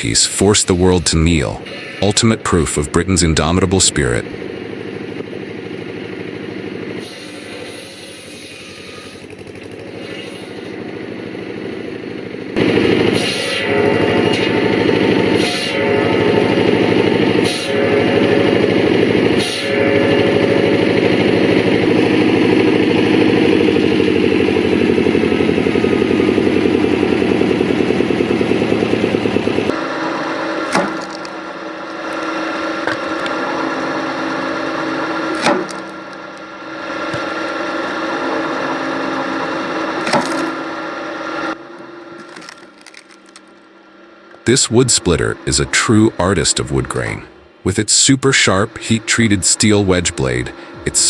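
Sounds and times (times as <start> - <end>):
quieter machine hum: 0.0 - 7.0, 10.5 - 51.0
wood-processing machine running: 0.0 - 51.0
wood cracking: 30.7 - 33.4, 42.2 - 43.6.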